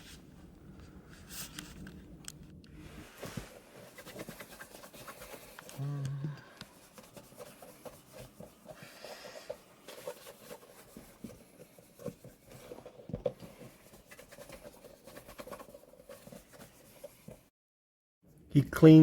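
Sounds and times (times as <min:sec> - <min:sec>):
faint steady hum: 0:00.0 - 0:17.4
scrubbing: 0:02.9 - 0:05.8, 0:06.7 - 0:17.5
clicking and rubbing on a shoe: 0:03.2 - 0:05.8, 0:06.6 - 0:17.5.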